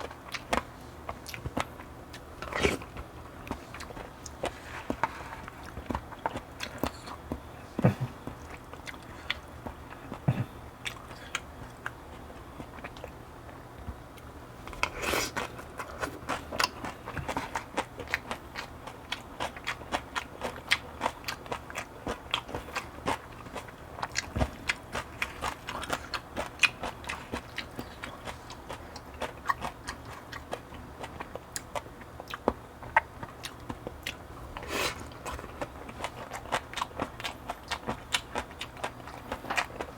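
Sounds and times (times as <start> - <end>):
wet mouth chewing: 14.7 - 39.9.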